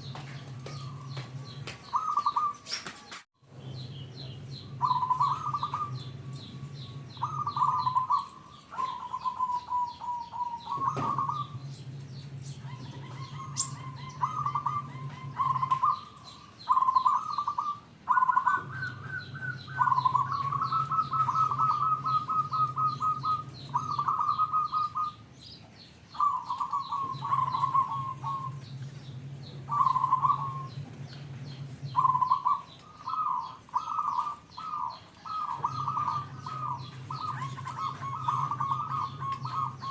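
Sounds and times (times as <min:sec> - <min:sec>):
dove cooing: 0:00.0 - 0:03.1, 0:03.8 - 0:25.3, 0:26.1 - 0:39.9
low hum: 0:03.4 - 0:09.2, 0:09.9 - 0:16.7, 0:26.6 - 0:39.9.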